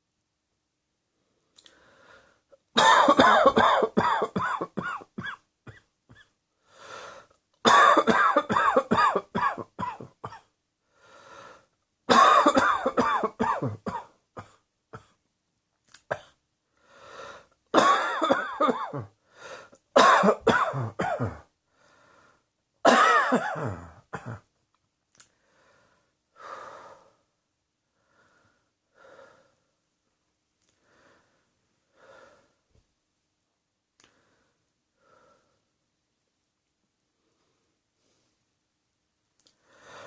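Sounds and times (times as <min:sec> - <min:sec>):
faint breaths: 0:01.2 - 0:02.6, 0:06.5 - 0:07.4, 0:10.8 - 0:11.8, 0:16.7 - 0:17.6, 0:19.2 - 0:19.8, 0:21.6 - 0:22.6, 0:25.2 - 0:29.8, 0:30.7 - 0:32.8, 0:34.0 - 0:35.8, 0:37.1 - 0:38.6, 0:39.4 - 0:40.0
person coughing hard: 0:02.8 - 0:06.3, 0:07.6 - 0:10.5, 0:12.1 - 0:15.2, 0:17.8 - 0:19.1, 0:20.0 - 0:21.5, 0:22.8 - 0:24.5.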